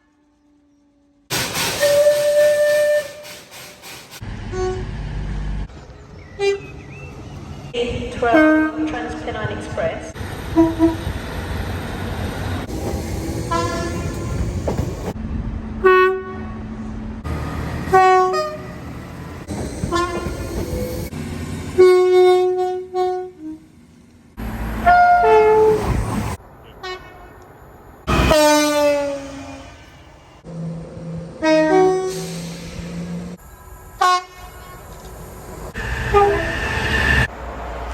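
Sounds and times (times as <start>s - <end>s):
train horn blasts: 1.8s - 3.5s, 4.5s - 4.9s, 8.2s - 9.5s, 10.5s - 11.1s, 13.5s - 14.4s, 15.8s - 16.7s, 17.9s - 18.8s, 19.9s - 20.6s, 21.7s - 23.7s, 24.8s - 25.8s, 28.1s - 30.0s, 31.4s - 32.4s, 34.0s - 34.8s, 35.8s - 36.6s.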